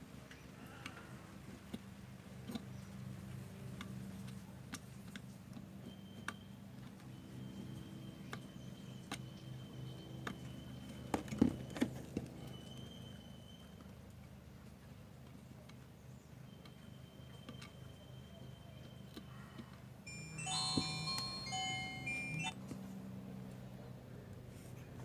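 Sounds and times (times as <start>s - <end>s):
faint high steady tone: 20.1s - 22.5s.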